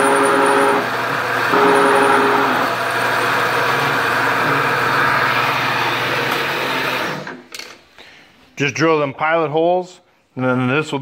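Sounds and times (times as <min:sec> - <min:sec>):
motor hum: 0:00.0 - 0:07.3
harsh metal cutting noise: 0:00.0 - 0:07.4.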